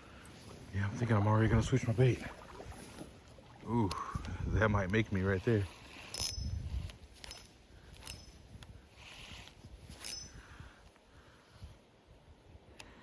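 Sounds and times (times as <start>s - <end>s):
metallic clicks of fishing tackle: 4.8s - 11.0s.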